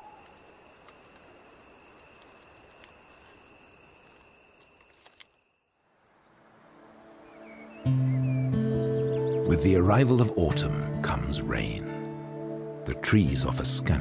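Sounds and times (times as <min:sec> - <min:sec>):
faint ticks: 0:00.0 - 0:05.4.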